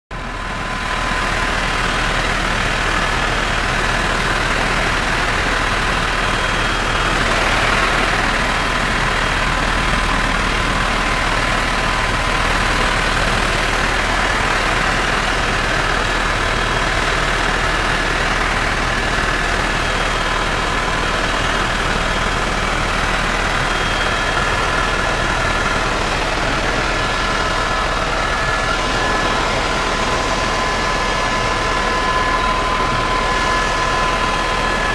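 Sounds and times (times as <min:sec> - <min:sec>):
machine hiss and hum: 0:21.2 - 0:34.9.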